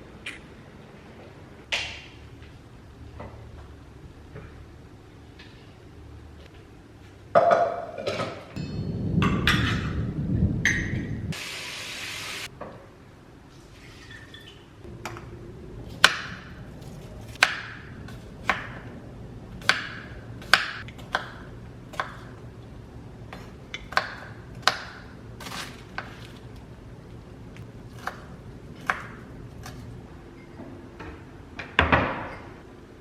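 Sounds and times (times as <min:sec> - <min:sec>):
low steady hum: 0:08.0 - 0:13.7, 0:14.4 - 0:33.0.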